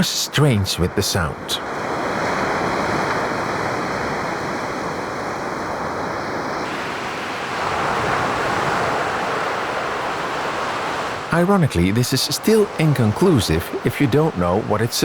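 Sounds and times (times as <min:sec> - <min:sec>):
steady noise hiss: 0:11.2 - 0:15.0.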